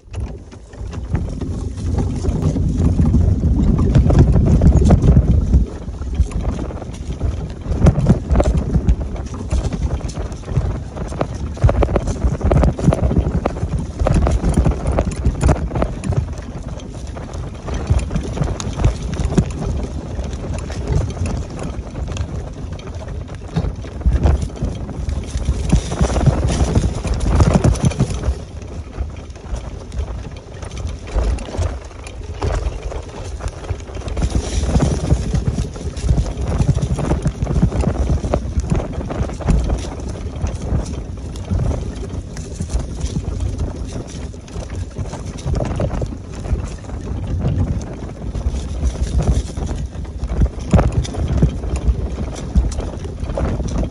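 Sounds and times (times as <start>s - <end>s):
knocks and clatter over bumps: 0.0s - 53.9s
wheelchair rolling rumble: 0.0s - 53.9s.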